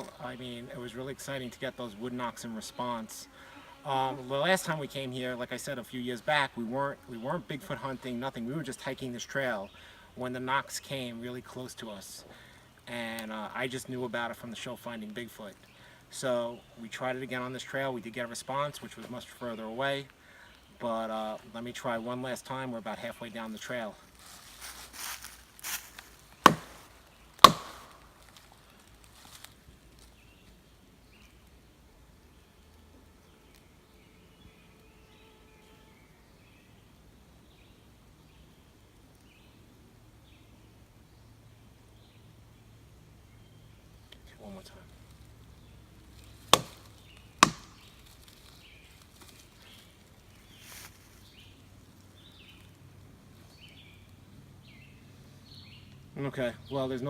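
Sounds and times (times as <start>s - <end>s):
wood knocking against tree: 25.0s - 28.4s, 46.4s - 48.3s.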